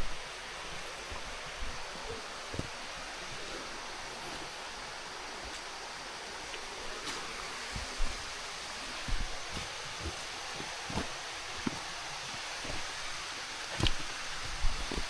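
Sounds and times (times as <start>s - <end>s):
stream rushing: 0.0s - 15.0s.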